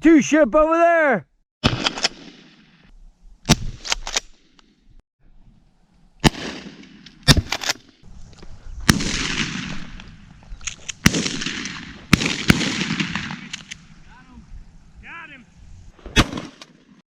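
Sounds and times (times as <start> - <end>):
shotgun shots: 1.6 - 2.8, 6.2 - 7.9, 8.9 - 10.1, 11.0 - 13.8, 16.0 - 17.0.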